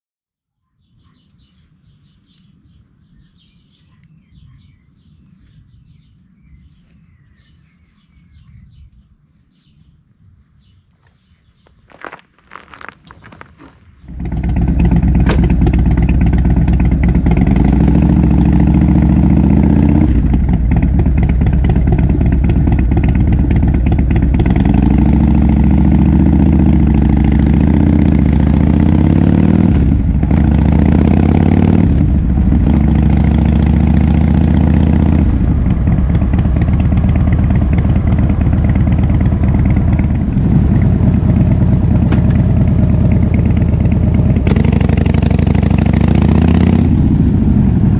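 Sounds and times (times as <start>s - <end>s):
motorcycle engine revving: 12.0s - 47.9s.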